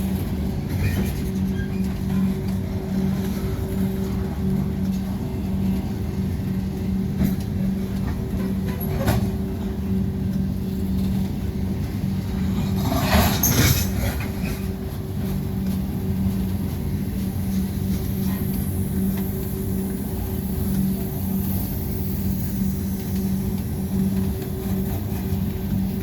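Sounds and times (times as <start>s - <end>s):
rattling clatter of train cars: 0.0s - 26.0s
train rolling on rails: 0.0s - 26.0s.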